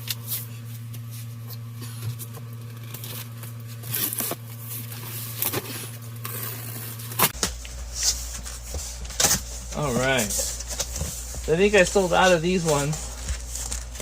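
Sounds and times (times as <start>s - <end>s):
steady low hum: 0.0s - 14.0s
tape tearing: 2.2s - 8.2s.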